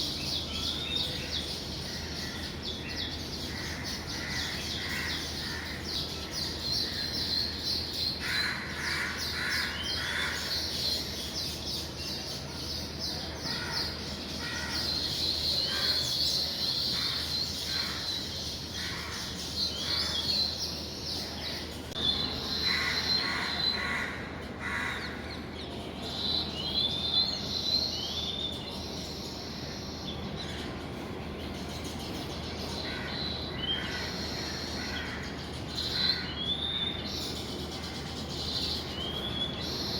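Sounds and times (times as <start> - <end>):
birds chattering chirps: 0.0 - 39.9.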